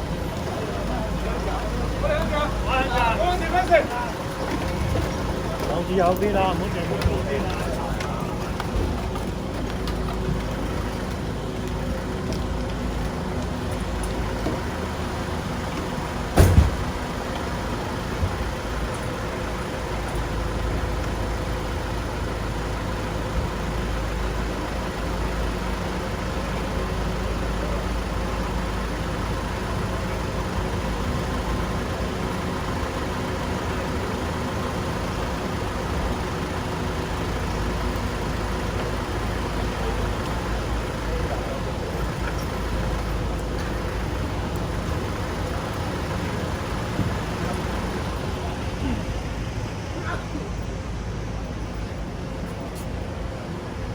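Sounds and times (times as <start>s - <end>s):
road traffic: 0.0s - 53.9s
vehicle engine idling: 0.0s - 53.9s.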